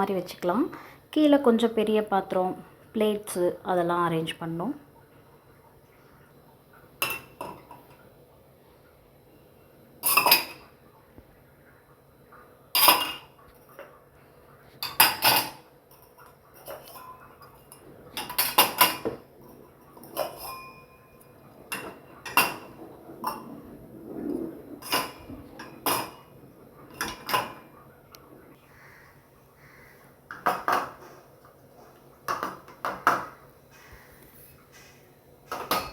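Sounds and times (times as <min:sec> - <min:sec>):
dishes clinking in dishwasher racks: 0:07.0 - 0:08.0, 0:10.0 - 0:10.8, 0:12.7 - 0:14.0, 0:14.8 - 0:27.8, 0:30.3 - 0:31.4, 0:32.3 - 0:35.9.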